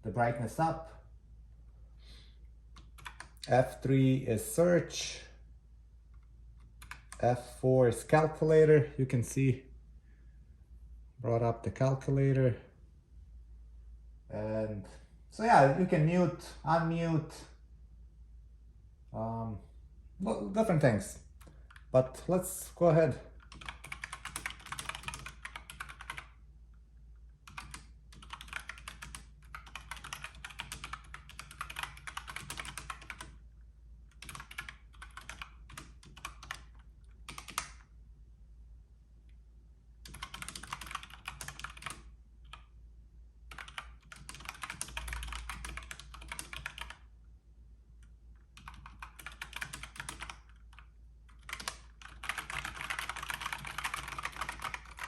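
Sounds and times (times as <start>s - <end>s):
fast typing on mechanical keyboard: 2.8s - 3.4s, 6.8s - 7.2s, 23.4s - 26.4s, 27.4s - 33.4s, 34.1s - 37.9s, 40.0s - 42.7s, 43.5s - 47.1s, 48.4s - 55.0s.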